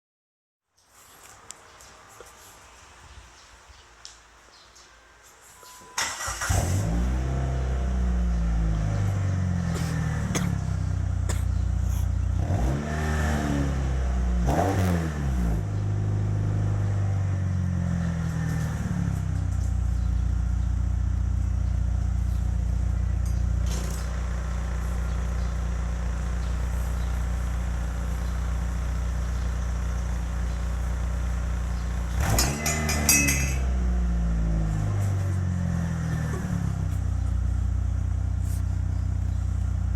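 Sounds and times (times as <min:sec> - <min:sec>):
car engine revving and idling: 0:06.2 - 0:39.9.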